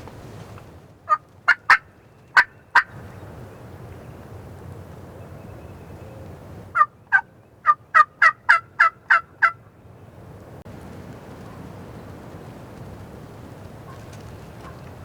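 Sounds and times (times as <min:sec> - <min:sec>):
wind noise: 0:00.0 - 0:01.0, 0:10.0 - 0:15.0
turkey yelps: 0:06.8 - 0:09.6.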